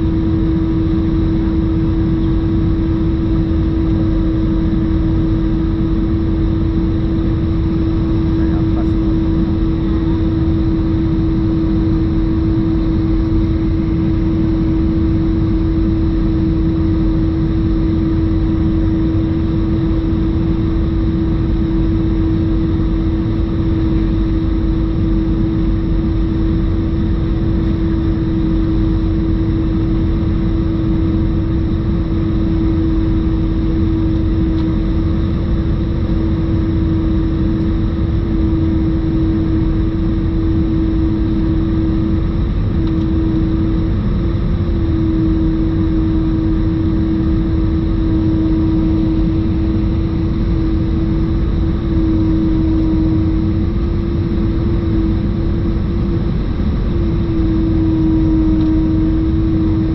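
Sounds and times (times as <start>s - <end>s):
engine howl at one pitch: 0.0s - 59.9s
jet engine and airflow rumble: 0.0s - 59.9s.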